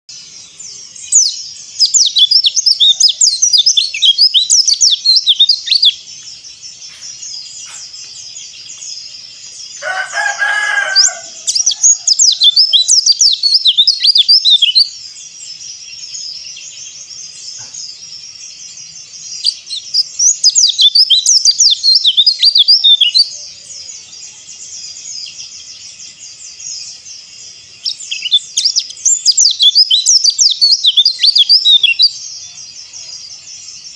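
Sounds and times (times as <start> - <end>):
bird twittering chirps: 0.1 - 33.9.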